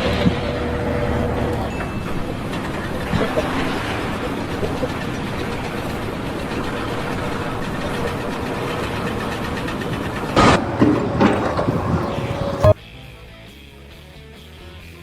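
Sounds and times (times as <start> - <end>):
machine-like rumble with hum: 0.0 - 12.8
loud knocks: 10.3 - 12.8.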